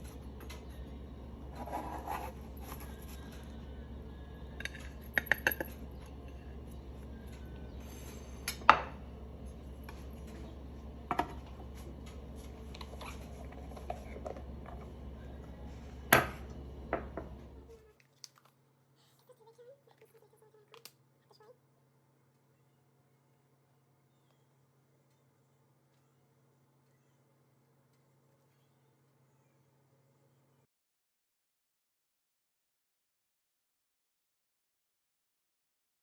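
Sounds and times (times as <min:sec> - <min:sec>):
steady low hum: 0:00.0 - 0:17.9
dishes and utensils clinking: 0:04.5 - 0:06.6.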